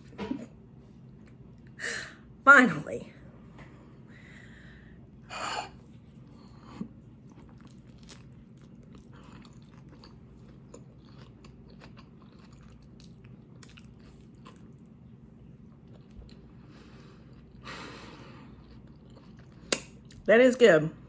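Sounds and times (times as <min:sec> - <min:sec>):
low room hum: 0:00.0 - 0:21.0
chewing and crunching: 0:06.0 - 0:20.3.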